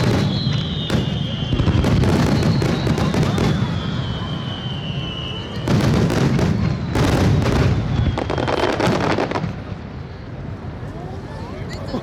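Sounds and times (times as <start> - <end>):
firework whistle: 0.0 - 9.6
distant firework bursts: 0.0 - 10.0
firework bangs and crackles: 0.0 - 10.8.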